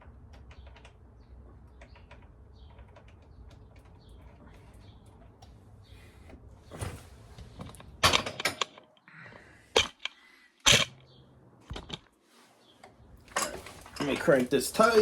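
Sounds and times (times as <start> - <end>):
metal tools clicking and knocking: 7.7 - 8.9, 9.8 - 11.1, 11.7 - 12.1, 13.3 - 15.0.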